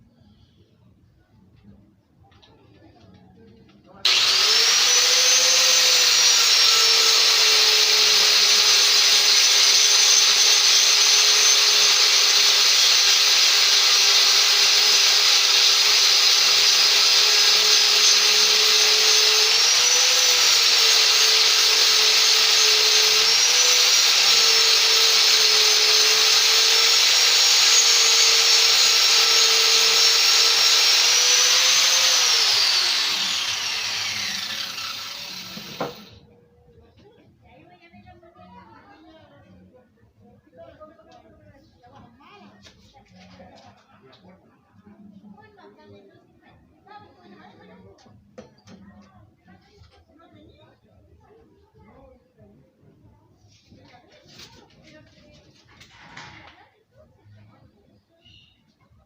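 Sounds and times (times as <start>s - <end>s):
power tool motor whining: 4.0s - 36.2s.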